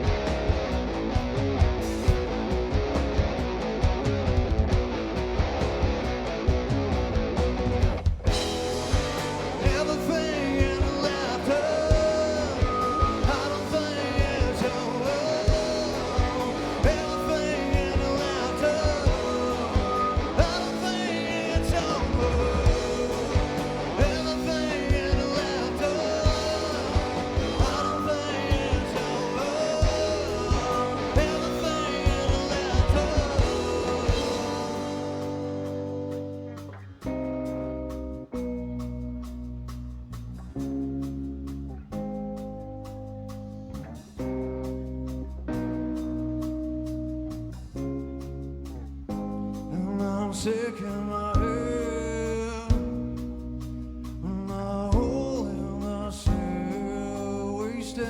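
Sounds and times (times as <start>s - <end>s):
drum beat: 0.0s - 36.1s
electric guitar lead melody: 0.0s - 39.5s
bass guitar: 0.0s - 58.0s.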